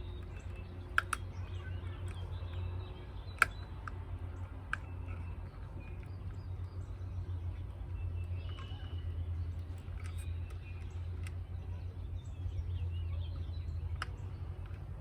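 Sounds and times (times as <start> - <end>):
sharp clicks: 0.0 - 6.8
faint bird chirps: 0.0 - 14.8.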